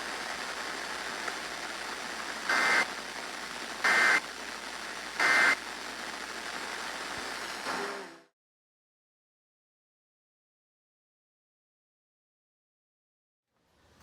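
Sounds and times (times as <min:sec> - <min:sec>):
radio receiver hiss: 0:00.0 - 0:08.3
warbling two-tone data bursts: 0:02.5 - 0:02.9.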